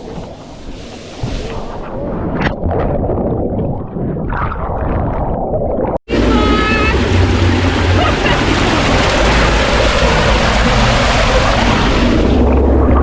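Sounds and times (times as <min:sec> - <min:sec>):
rushing water on waterslide: 0:06.1 - 0:13.0.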